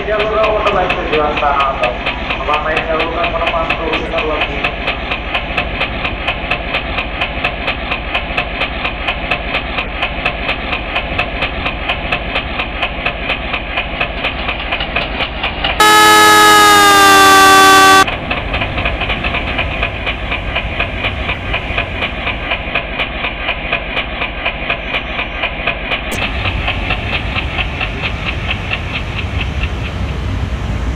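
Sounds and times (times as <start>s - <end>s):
passing train rumble: 0.0s - 15.7s, 16.3s - 24.7s, 25.4s - 30.9s
railroad crossing alarm ringing: 15.8s - 18.1s
train horn blast: 15.8s - 18.1s.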